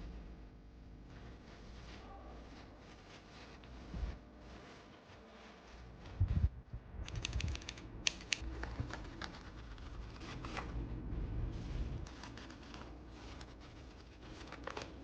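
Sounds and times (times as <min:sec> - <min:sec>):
plastic keyboard parts clicking: 0:07.1 - 0:09.4.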